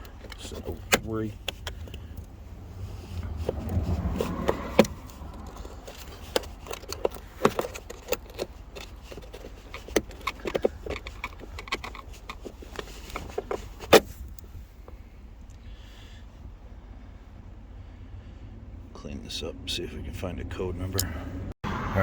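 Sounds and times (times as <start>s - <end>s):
hand tools clicking and knocking: 0.0s - 2.3s, 3.3s - 14.0s
passing traffic rumble: 0.0s - 22.0s.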